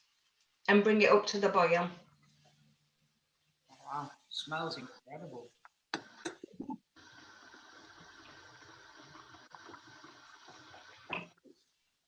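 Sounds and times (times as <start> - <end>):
steady sizzle: 6.0 - 12.0
soda fizzing in a hot pan: 7.0 - 11.4.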